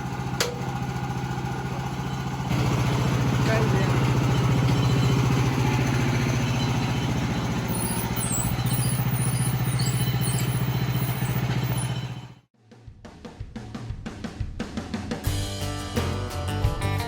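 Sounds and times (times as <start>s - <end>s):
small gasoline engine running: 0.0s - 12.5s.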